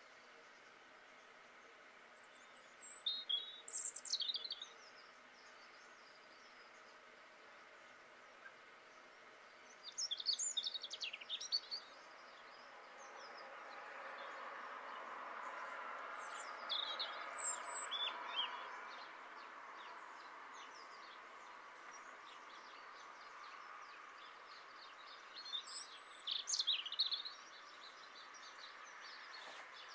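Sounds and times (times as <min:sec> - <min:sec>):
steady background hiss: 0:00.0 - 0:29.9
songbird trilling: 0:16.2 - 0:18.8.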